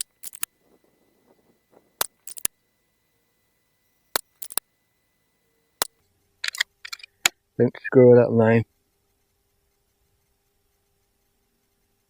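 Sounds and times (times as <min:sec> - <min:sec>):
rifle action clicking: 0:00.0 - 0:00.5, 0:02.0 - 0:02.5, 0:04.2 - 0:04.6.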